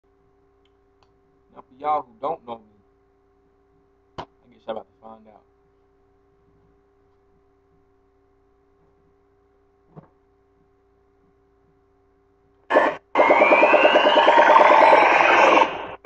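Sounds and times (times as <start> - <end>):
faint steady hum: 0.1 - 16.0
electronic robot sound effects: 12.7 - 16.0.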